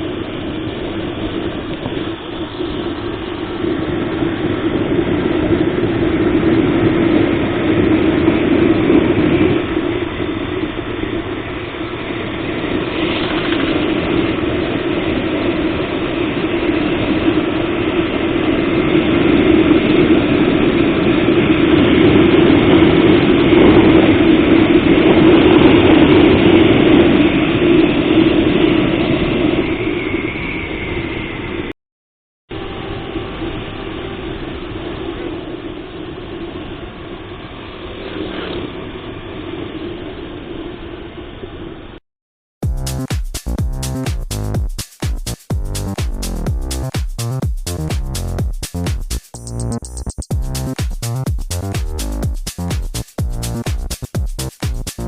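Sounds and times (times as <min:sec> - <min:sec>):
motorcycle engine running: 0:43.6 - 0:49.2, 0:50.1 - 0:55.0.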